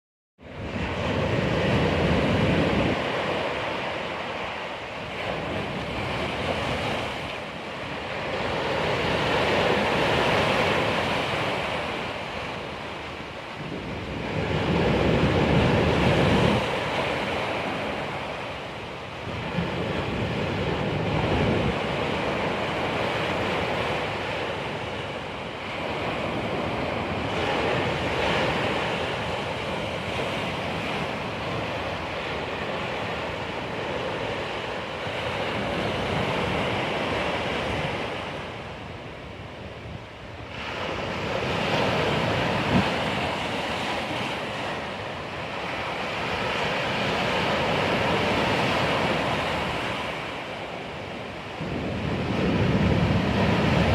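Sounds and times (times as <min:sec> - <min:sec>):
sea waves breaking on shore: 0:00.4 - 0:53.9
wind on microphone: 0:00.4 - 0:53.9.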